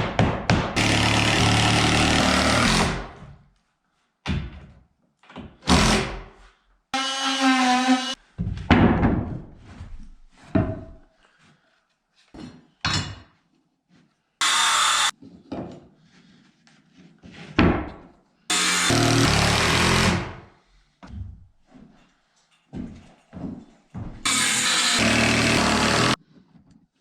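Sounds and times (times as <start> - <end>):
power tool bursts: 18.5 - 20.4, 24.3 - 26.2.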